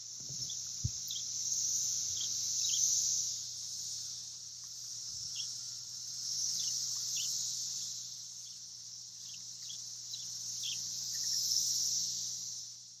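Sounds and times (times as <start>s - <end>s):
cicadas droning: 0.0s - 13.0s.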